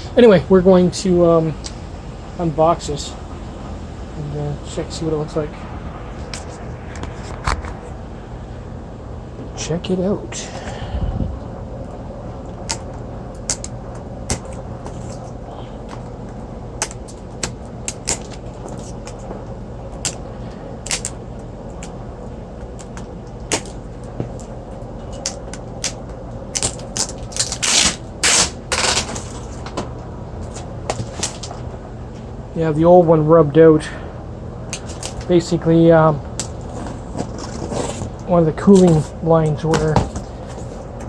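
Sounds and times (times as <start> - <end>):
steady low hum: 0.0 - 41.0
cardboard scraping and rustling: 30.4 - 31.6, 36.4 - 40.9.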